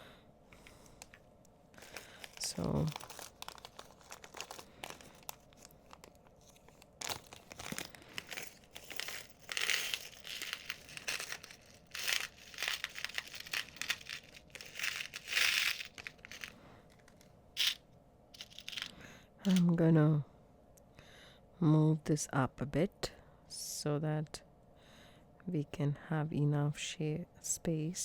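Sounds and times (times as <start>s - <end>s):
plastic bag crinkling: 1.8s - 17.8s, 18.4s - 18.9s.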